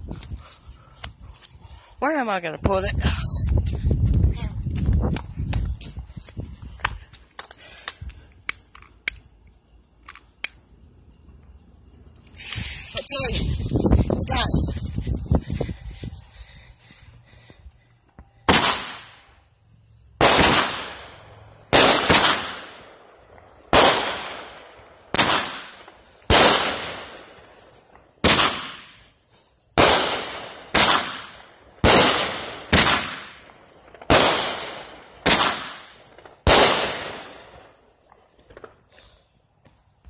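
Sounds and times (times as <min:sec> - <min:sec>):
firework bangs: 0:18.5 - 0:19.4, 0:20.2 - 0:23.1, 0:23.7 - 0:29.0, 0:29.8 - 0:37.8.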